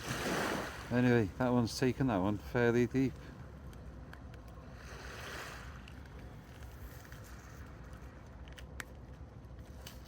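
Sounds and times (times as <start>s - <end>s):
wind and sea rumble: 0.0s - 10.0s.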